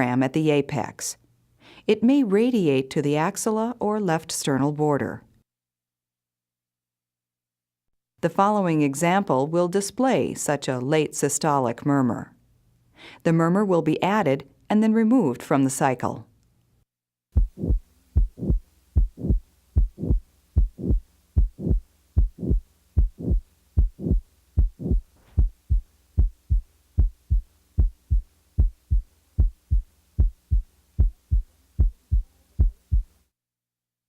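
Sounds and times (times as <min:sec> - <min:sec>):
blowing heart murmur: 0:17.4 - 0:33.1
heartbeat lub-dub: 0:17.4 - 0:33.1.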